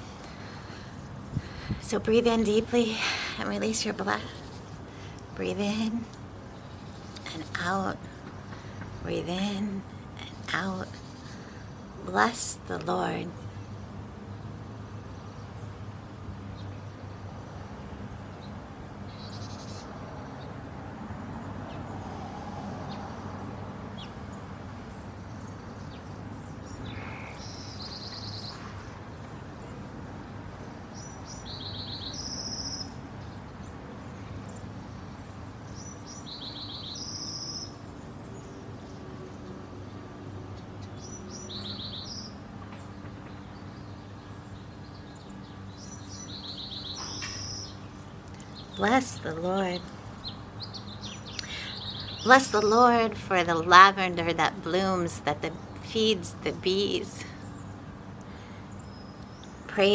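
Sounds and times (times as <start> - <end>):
steady low background hum: 0.0 - 59.9
songbird trilling: 25.3 - 30.0, 30.6 - 39.3, 40.8 - 42.4, 44.6 - 57.8.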